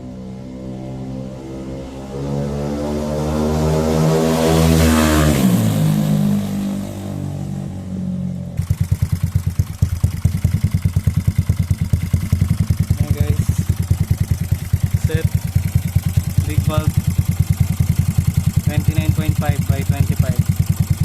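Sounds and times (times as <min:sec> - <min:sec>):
scooter engine idling: 0:05.6 - 0:21.0.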